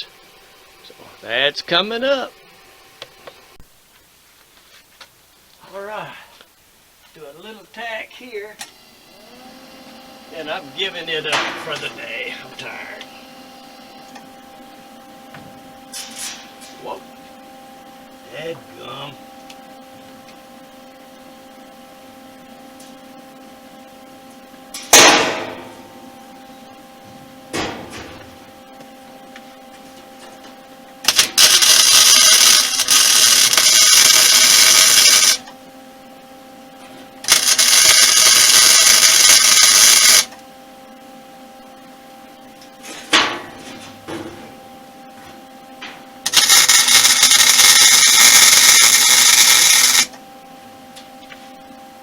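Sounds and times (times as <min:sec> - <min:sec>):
low steady hum: 0:10.2 - 0:31.6
welding on sheet metal: 0:10.8 - 0:12.6, 0:15.9 - 0:16.8, 0:24.7 - 0:26.0, 0:31.0 - 0:35.5, 0:37.2 - 0:40.3, 0:46.2 - 0:50.2
sharp ringing knocks: 0:25.0 - 0:25.8.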